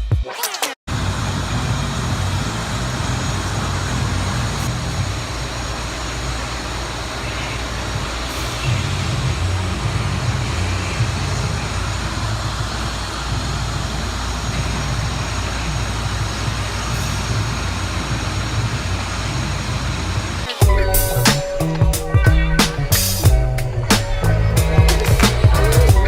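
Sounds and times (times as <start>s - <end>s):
hiss: 0.9s - 21.7s
machinery rumble: 0.9s - 26.0s.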